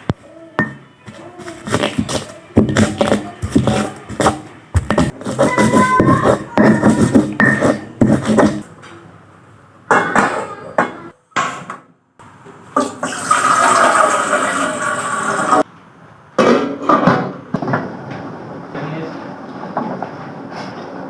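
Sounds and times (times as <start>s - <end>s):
cookware and utensils clattering: 0.0s - 8.8s, 9.9s - 11.8s, 12.8s - 15.6s, 16.4s - 17.8s.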